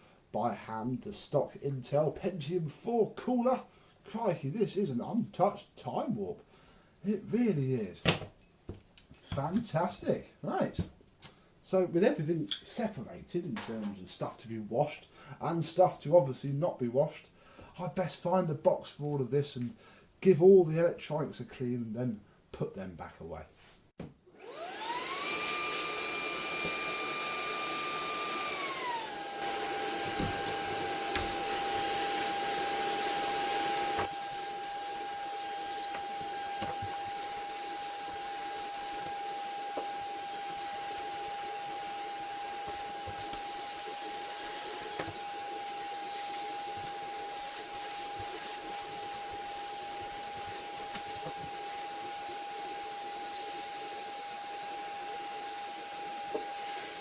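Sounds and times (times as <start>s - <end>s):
vacuum cleaner motor whining: 24.4s - 57.0s.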